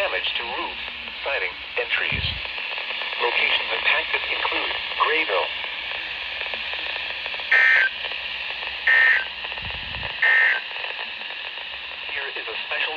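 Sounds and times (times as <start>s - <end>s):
radio hiss: 0.0s - 12.9s
warbling digital data tones: 7.5s - 8.0s, 8.8s - 9.3s, 10.2s - 10.6s.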